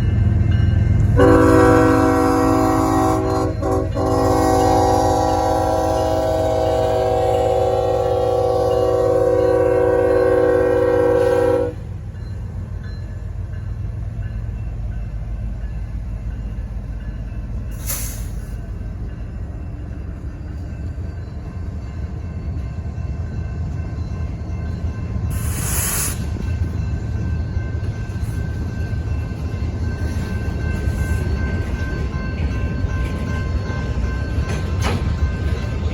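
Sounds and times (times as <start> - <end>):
moving train rumble: 0.0 - 35.9
locomotive air horn: 1.2 - 11.9
brief air hisses: 17.8 - 18.5, 25.4 - 26.3.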